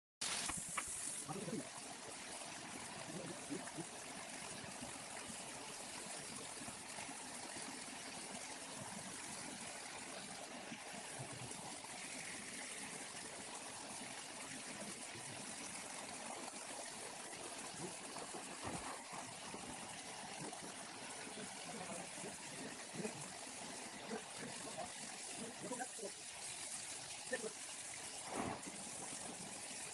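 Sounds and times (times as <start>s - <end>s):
waterfall flowing: 0.2s - 29.9s.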